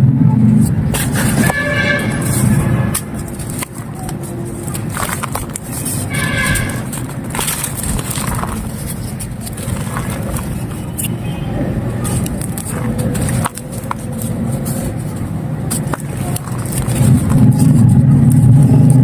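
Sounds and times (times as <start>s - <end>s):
low rumble of traffic: 0.0s - 19.0s
sharp crackles: 0.4s - 11.2s, 12.0s - 19.0s
dry clay crumbling and scraping: 0.5s - 11.2s, 12.0s - 19.0s.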